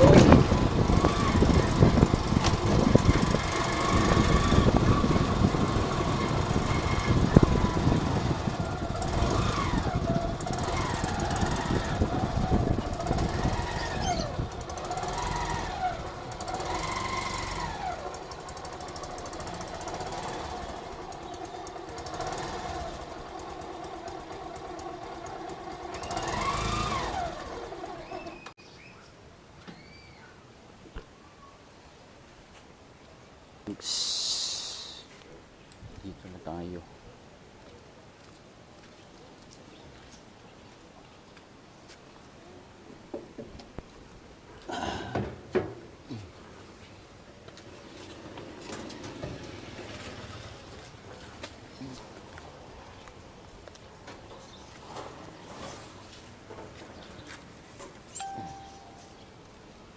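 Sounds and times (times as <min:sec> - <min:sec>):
vehicle engine and road noise: 0:00.0 - 0:29.6, 0:32.4 - 0:59.9
short rising-and-falling tones: 0:58.1 - 0:59.4.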